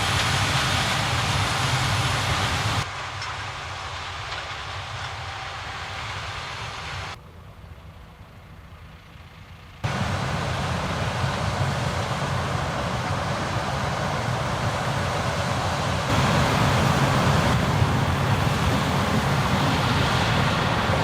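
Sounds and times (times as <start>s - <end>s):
harvester engines droning: 0.0s - 21.0s.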